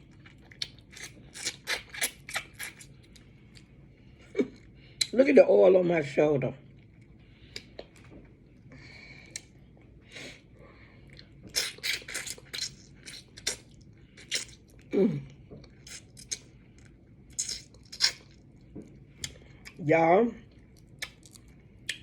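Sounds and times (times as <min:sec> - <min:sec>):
chewing and lip smacks: 0:00.0 - 0:03.8, 0:06.6 - 0:10.0, 0:11.0 - 0:14.9, 0:15.6 - 0:19.8, 0:20.5 - 0:22.0.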